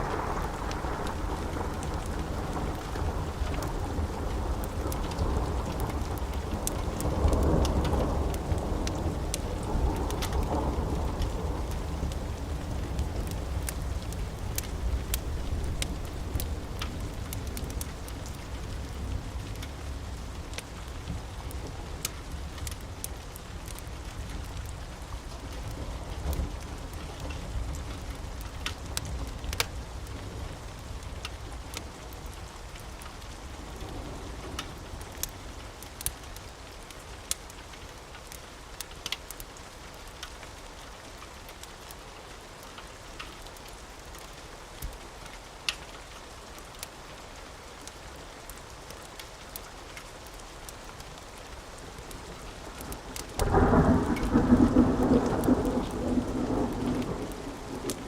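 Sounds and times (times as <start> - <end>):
steady rain: 0.0 - 58.0
fireplace crackling ticks: 10.0 - 10.5, 11.1 - 18.8, 21.5 - 24.7, 28.3 - 30.2, 34.6 - 39.5
loud thunder: 53.4 - 58.0.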